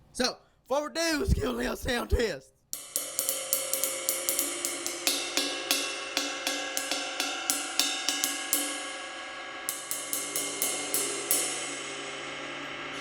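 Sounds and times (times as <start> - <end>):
ride cymbal struck and ringing: 2.8 - 13.0.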